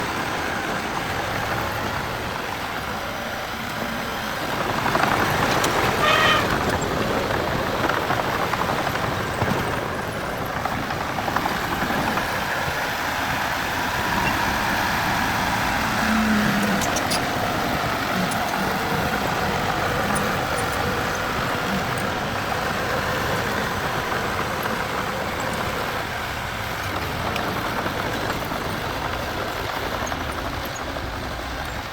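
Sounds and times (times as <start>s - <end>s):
heavy machinery engine running: 0.0s - 31.9s
high-pitched squeal: 5.8s - 6.7s.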